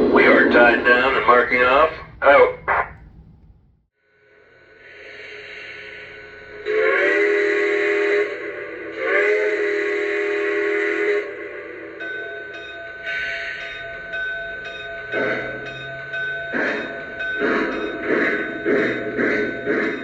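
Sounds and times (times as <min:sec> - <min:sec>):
steam chuffs: 0:00.0 - 0:03.8, 0:13.0 - 0:20.0.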